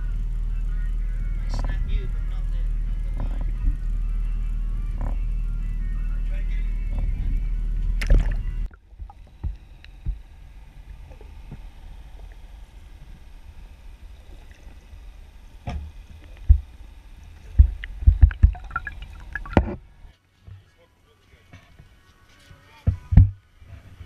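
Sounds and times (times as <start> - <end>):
water: 0.0 - 5.3, 6.7 - 24.0
loud steady low sound: 0.0 - 20.0
wind: 0.0 - 24.0
knocks and thumps on boat: 17.5 - 19.8.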